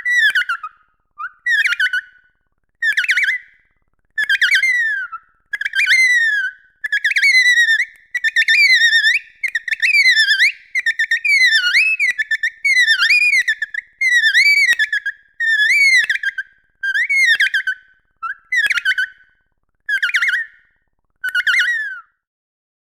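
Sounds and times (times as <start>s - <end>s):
dolphin whistling: 4.3s - 16.4s.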